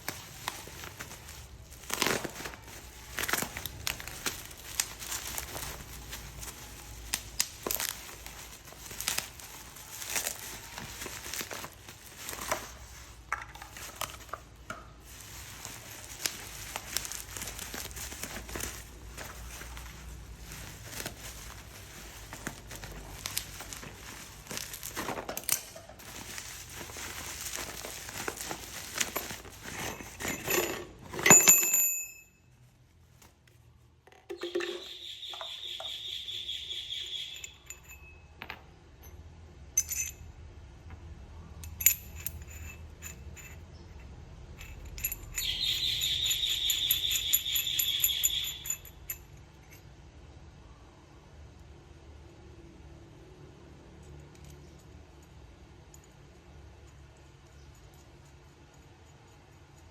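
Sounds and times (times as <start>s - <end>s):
packaging rustling: 0.0s - 31.4s
metal parts clinking and scraping: 0.0s - 32.3s, 34.1s - 36.1s, 36.8s - 49.9s.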